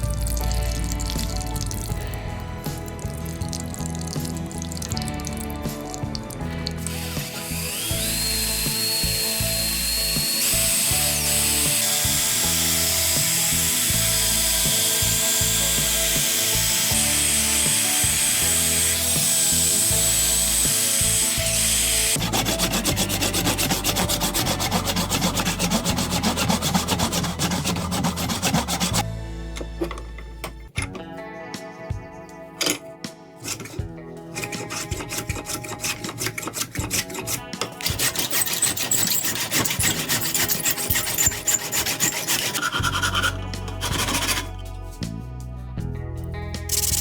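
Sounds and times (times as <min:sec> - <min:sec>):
music: 0:00.0 - 0:47.0
small power tool running: 0:06.8 - 0:29.0, 0:37.3 - 0:44.5, 0:46.7 - 0:47.0
rubbing strokes: 0:21.6 - 0:29.0, 0:33.4 - 0:44.6.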